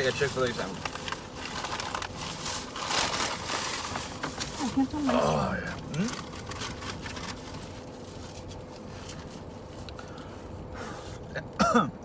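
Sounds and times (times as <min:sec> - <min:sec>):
low background hum: 0:00.0 - 0:12.0
handling scrapes and rustles: 0:06.1 - 0:11.2.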